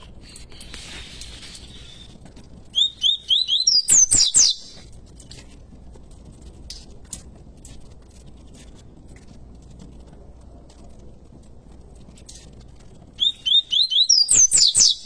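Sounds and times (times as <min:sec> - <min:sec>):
bird singing: 0:02.7 - 0:04.8, 0:13.2 - 0:15.0.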